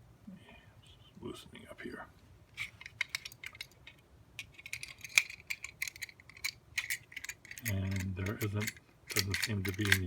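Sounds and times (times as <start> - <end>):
lock picking metal clicks: 4.4 - 10.0.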